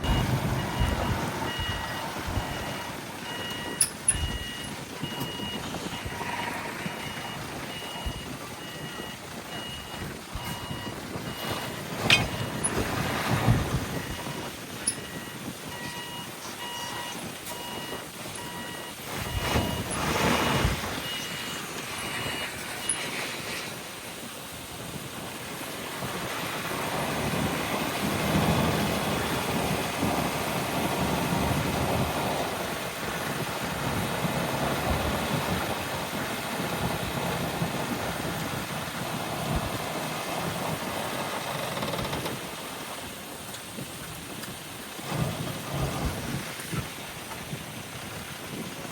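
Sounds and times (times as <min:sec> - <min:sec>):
reversing beeper: 0:00.0 - 0:23.3
heavy diesel engine under load: 0:00.0 - 0:48.9.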